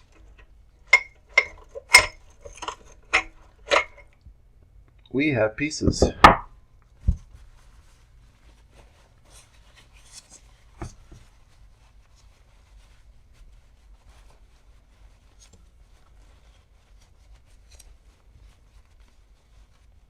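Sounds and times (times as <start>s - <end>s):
metal parts rubbing and clicking: 0.0s - 4.2s.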